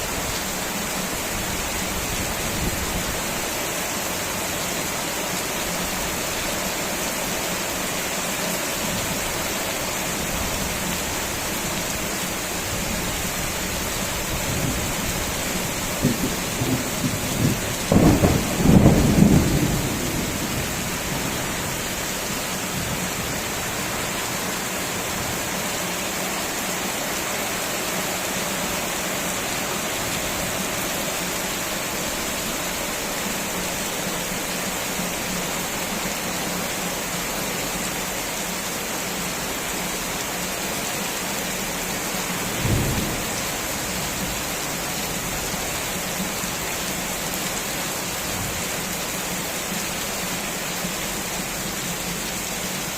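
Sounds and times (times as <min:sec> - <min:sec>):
heavy rain falling: 0:00.0 - 0:52.9
thunder rumbling: 0:16.0 - 0:22.0, 0:42.5 - 0:44.2.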